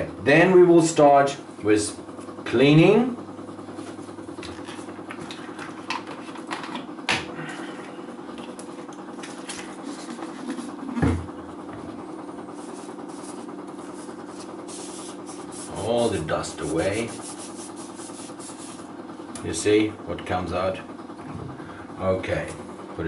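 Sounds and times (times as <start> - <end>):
small motor humming: 1.7 - 19.9
cloth rubbing rod: 12.5 - 18.9.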